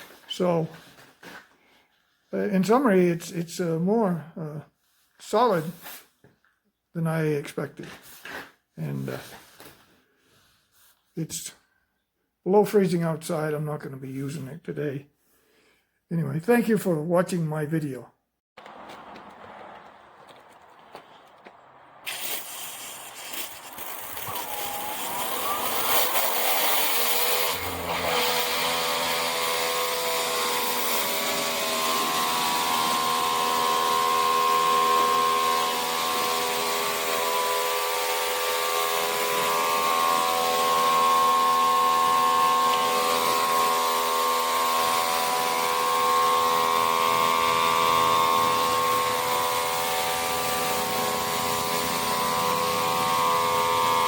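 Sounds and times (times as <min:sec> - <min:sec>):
pressure washer motor whining: 0:22.1 - 0:54.0.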